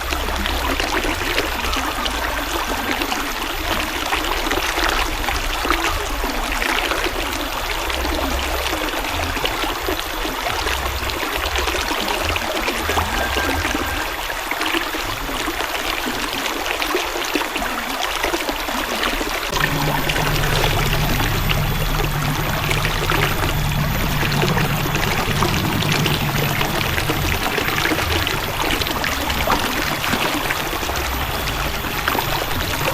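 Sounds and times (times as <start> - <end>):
river water flowing: 0.0 - 32.9
deep low rumble: 19.5 - 32.9.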